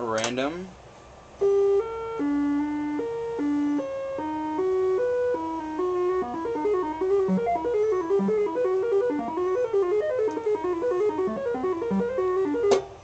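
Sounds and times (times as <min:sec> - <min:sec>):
synthesizer tone jumping in pitch: 0:01.4 - 0:12.7.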